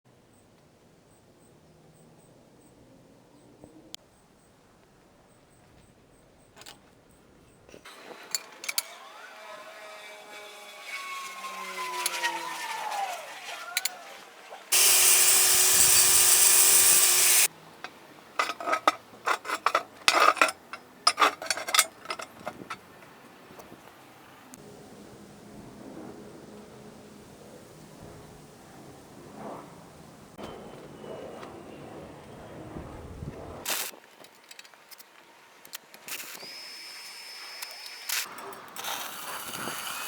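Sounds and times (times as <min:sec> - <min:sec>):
whine sliding down in pitch: 0:09.0 - 0:14.2
loud steady hiss: 0:14.7 - 0:17.5.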